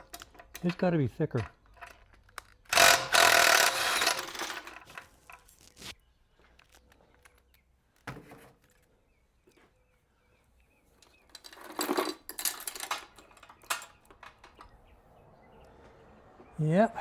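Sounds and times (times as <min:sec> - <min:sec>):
metal clatter: 0:00.0 - 0:05.5, 0:11.3 - 0:14.8
small metal parts clinking: 0:00.0 - 0:05.7, 0:11.0 - 0:14.8.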